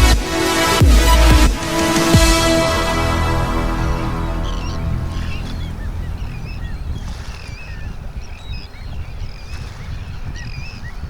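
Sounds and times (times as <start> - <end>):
low rumble: 0.0 - 7.6
birds chirping: 0.2 - 11.0.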